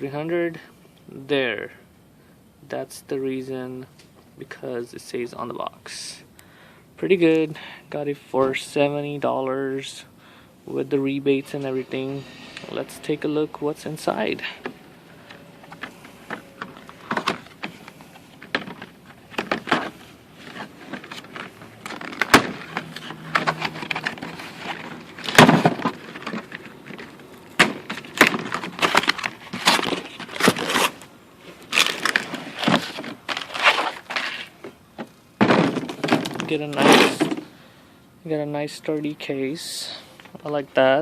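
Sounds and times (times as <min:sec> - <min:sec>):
cardboard rustling and tearing: 0:15.6 - 0:34.6.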